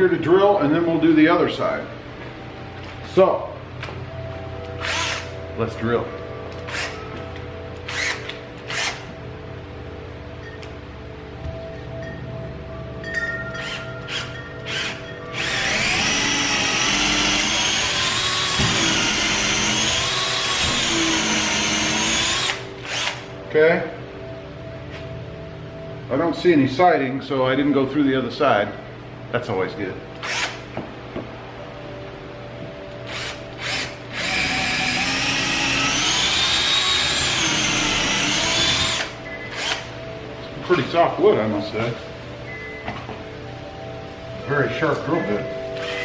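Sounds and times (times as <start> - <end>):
power drill boring into wood: 4.8 - 5.3, 7.9 - 9.0, 13.6 - 23.2, 30.2 - 30.6, 33.1 - 39.9, 45.8 - 46.0.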